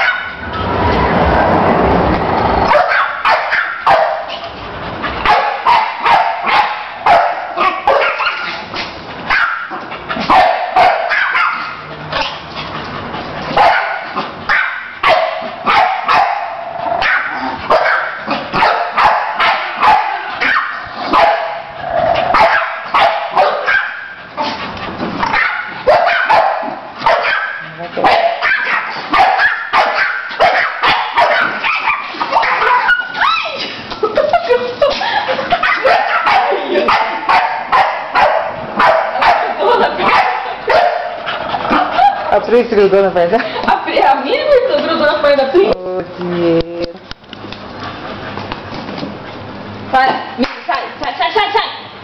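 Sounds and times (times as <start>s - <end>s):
dogs barking and yipping: 0.0s - 1.3s, 2.6s - 42.4s.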